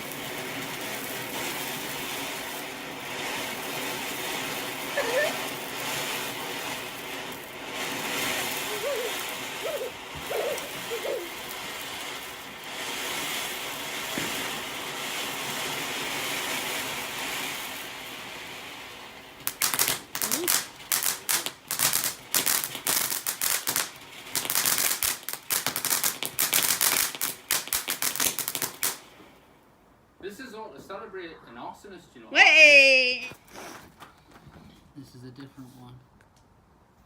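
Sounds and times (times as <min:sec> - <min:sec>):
firework crackling bangs: 0:00.0 - 0:29.6
firework hissing: 0:00.0 - 0:29.7.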